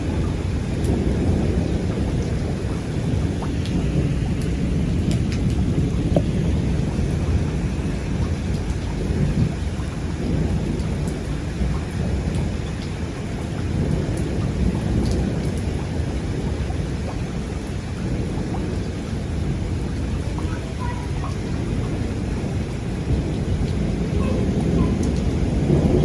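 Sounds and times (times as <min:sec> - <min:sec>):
deep continuous rumble: 0:00.0 - 0:26.0
heavy rain pouring: 0:00.0 - 0:26.0.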